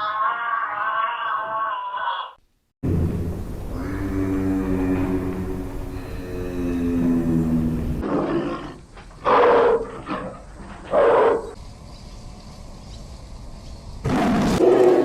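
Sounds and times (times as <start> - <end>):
animal low call: 1.0 - 8.7
animal rough calls: 2.9 - 11.6.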